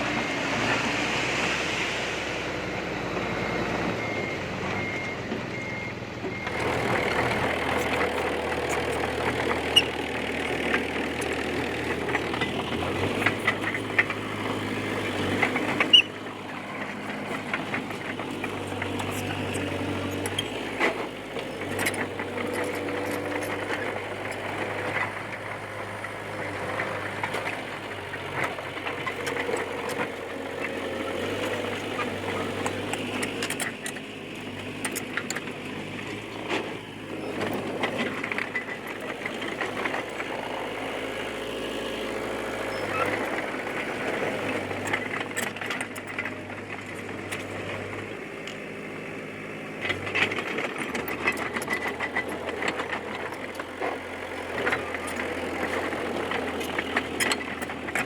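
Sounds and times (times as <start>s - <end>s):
bulldozer diesel engine running: 0.0s - 58.0s
squeals: 3.2s - 10.2s, 11.8s - 17.4s, 18.5s - 20.8s, 42.6s - 43.4s.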